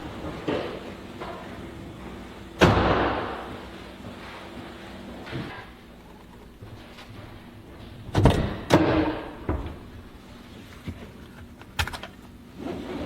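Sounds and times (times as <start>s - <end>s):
doors banging shut: 8.1s - 9.9s.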